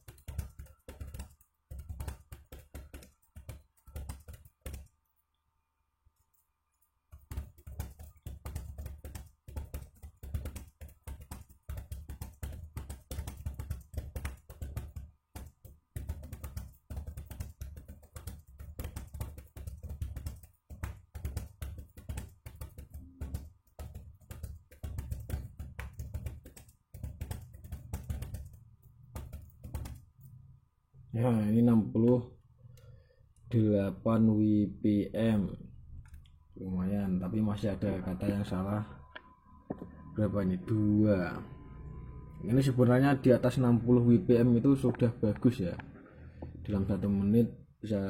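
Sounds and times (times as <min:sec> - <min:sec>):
fast typing on computer keyboard: 0:00.0 - 0:05.0, 0:07.1 - 0:30.4.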